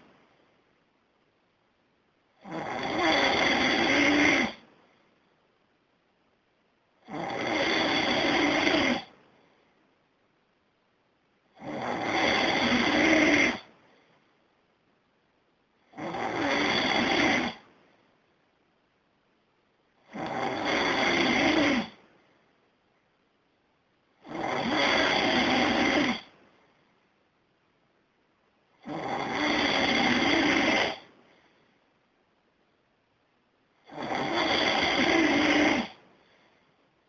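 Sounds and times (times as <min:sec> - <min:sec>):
quiet breaths: 0:00.0 - 0:37.0
man snoring loudly: 0:02.4 - 0:04.6, 0:07.0 - 0:09.1, 0:11.5 - 0:13.7, 0:15.9 - 0:17.6, 0:20.0 - 0:22.0, 0:24.2 - 0:26.3, 0:28.8 - 0:31.1, 0:33.8 - 0:36.0.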